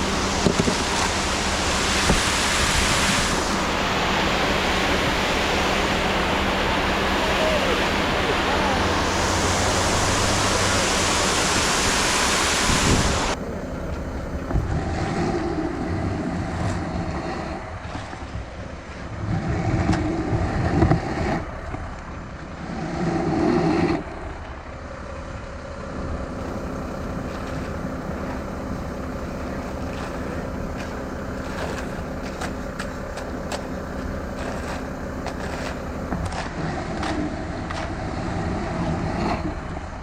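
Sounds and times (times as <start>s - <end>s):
engine running: 0.0s - 40.0s
wind buffeting microphone: 8.0s - 13.4s.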